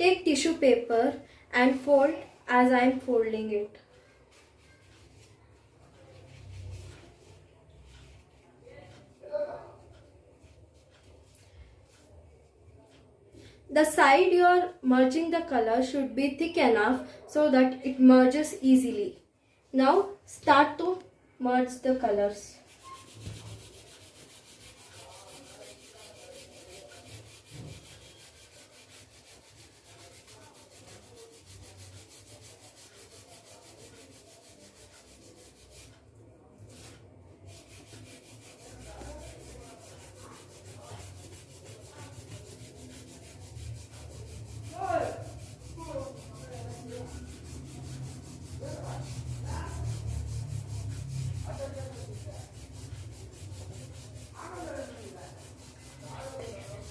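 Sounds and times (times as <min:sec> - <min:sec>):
tissue paper rubbing on paper: 0:04.2 - 0:08.3, 0:22.5 - 0:36.0, 0:36.6 - 0:56.9.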